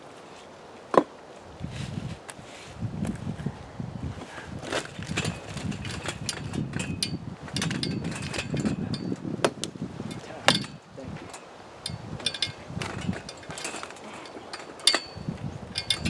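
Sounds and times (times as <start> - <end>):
wood scraping: 4.2 - 16.0.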